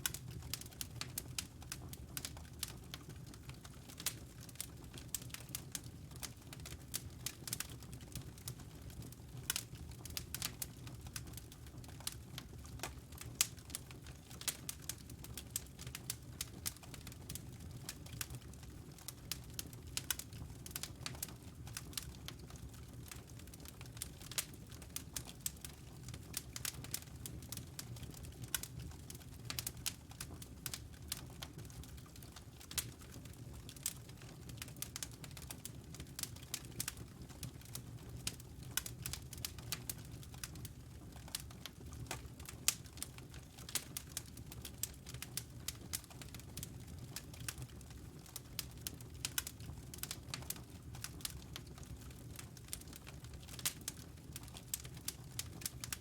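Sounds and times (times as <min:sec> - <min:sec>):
low rumble of flames: 0:00.0 - 0:56.0
wood fire crackling: 0:00.0 - 0:56.0.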